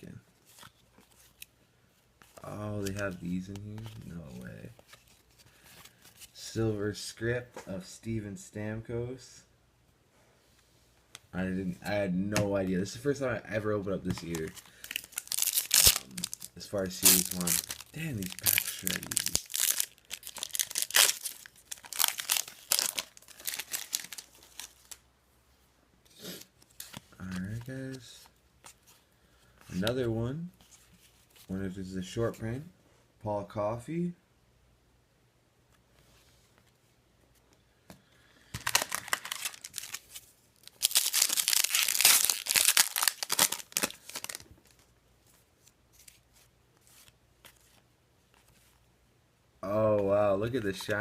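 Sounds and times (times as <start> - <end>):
foil wrapper tearing and crinkling: 14.2 - 25.0, 38.6 - 44.8.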